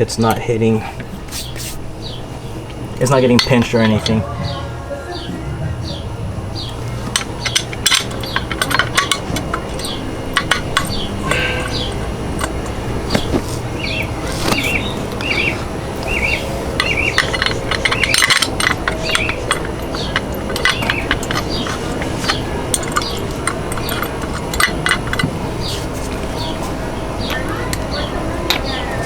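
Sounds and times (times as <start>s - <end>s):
low background noise: 0.0s - 29.0s
metal tools clinking: 2.7s - 4.7s, 6.6s - 29.0s
small bird chirping: 13.1s - 18.2s.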